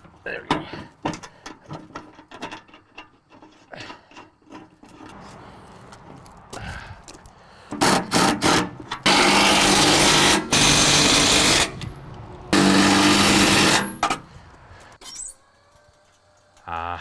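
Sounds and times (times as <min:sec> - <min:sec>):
electric motor running in bursts: 0:09.1 - 0:11.8, 0:12.6 - 0:14.0.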